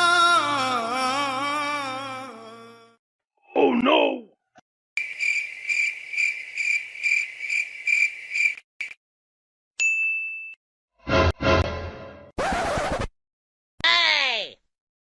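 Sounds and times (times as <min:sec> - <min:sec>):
crickets chirping: 0:05.0 - 0:09.0.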